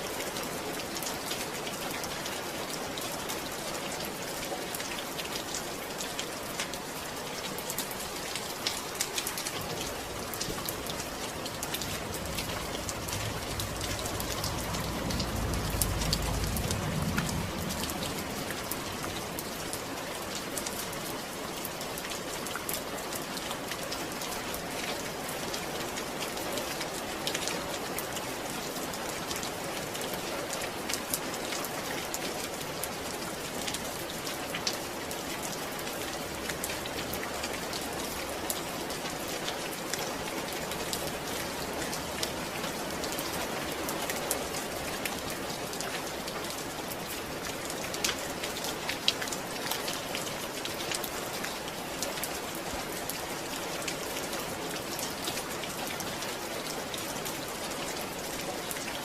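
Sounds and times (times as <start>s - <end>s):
steady rain falling: 0.0s - 59.0s
low rumble: 11.5s - 19.4s.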